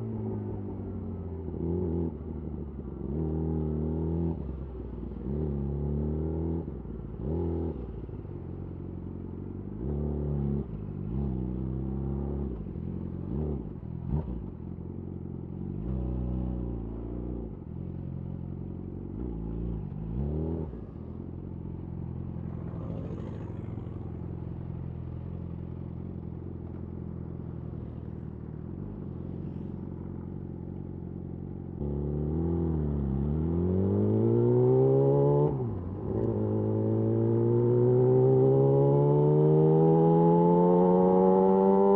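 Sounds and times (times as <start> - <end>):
motorcycle engine revving: 19.1 - 26.8, 27.4 - 41.9.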